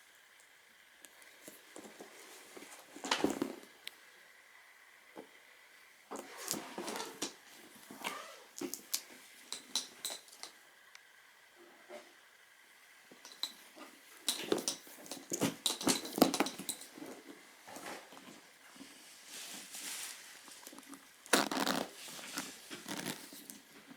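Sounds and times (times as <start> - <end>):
briefcase clicks and rustles: 1.7 - 3.7, 14.2 - 17.2, 20.6 - 23.7.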